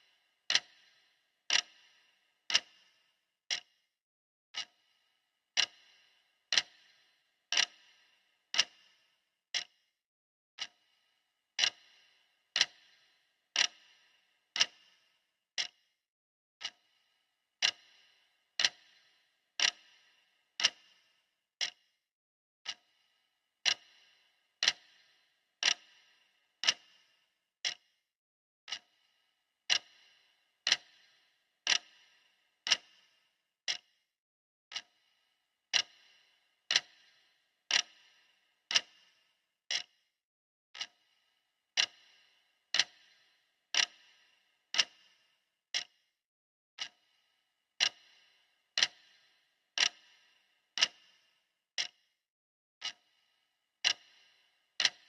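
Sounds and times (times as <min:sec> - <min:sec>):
clock ticking: 0:00.0 - 0:03.7, 0:04.6 - 0:04.9, 0:05.5 - 0:09.7, 0:10.6 - 0:10.9, 0:11.6 - 0:15.0, 0:15.6 - 0:15.8, 0:16.6 - 0:17.0, 0:17.6 - 0:21.8, 0:22.6 - 0:23.0, 0:23.6 - 0:27.8, 0:28.7 - 0:29.0, 0:29.7 - 0:33.1, 0:33.7 - 0:33.9, 0:34.7 - 0:35.1, 0:35.7 - 0:39.9, 0:40.8 - 0:41.1, 0:41.8 - 0:46.0, 0:46.8 - 0:47.2, 0:47.8 - 0:51.2, 0:51.8 - 0:52.1, 0:53.8 - 0:55.0.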